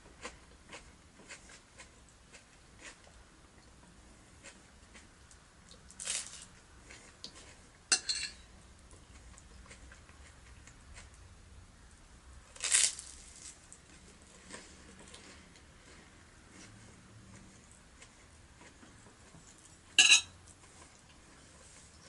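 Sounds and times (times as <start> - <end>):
cutlery clinking on a plate: 7.9 - 8.4, 20.0 - 20.4.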